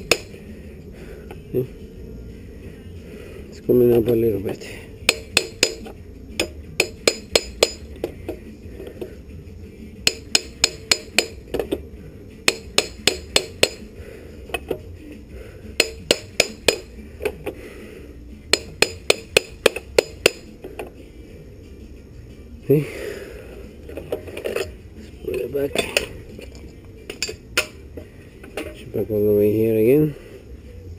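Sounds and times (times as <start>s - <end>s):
hammer tapping on metal exhaust: 0.0s - 0.4s, 5.0s - 8.4s, 10.0s - 11.8s, 12.4s - 13.9s, 15.8s - 17.5s, 18.5s - 20.5s, 27.1s - 27.8s.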